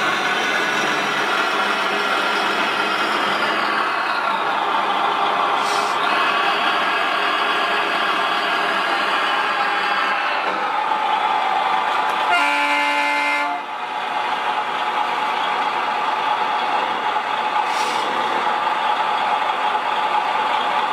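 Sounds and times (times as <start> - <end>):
toy vehicle horn: 12.2 - 13.7.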